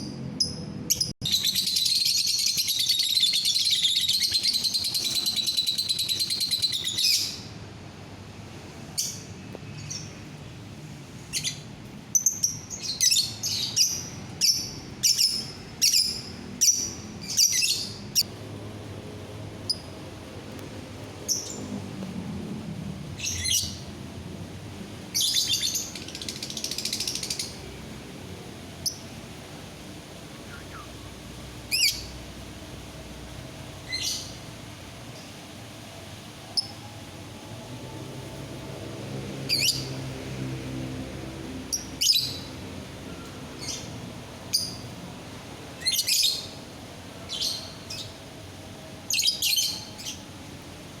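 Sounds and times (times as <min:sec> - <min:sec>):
high-pitched bird chirps: 0:00.4 - 0:07.4
bird chattering: 0:01.2 - 0:07.3.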